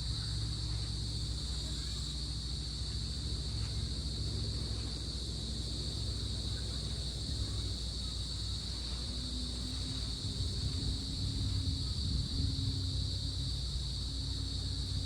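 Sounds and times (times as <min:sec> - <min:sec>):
crickets chirring: 0:00.0 - 0:15.0
low constant rumble: 0:00.0 - 0:15.0.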